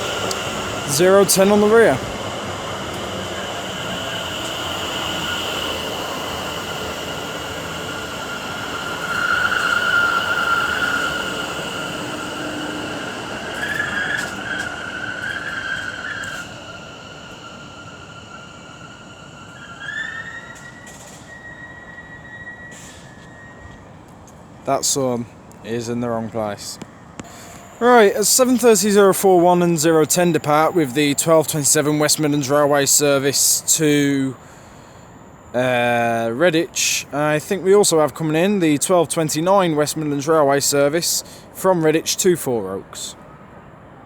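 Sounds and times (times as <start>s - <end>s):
rising tone: 0.0s - 22.1s
train wheels and brakes squealing: 0.0s - 26.0s, 26.6s - 44.0s.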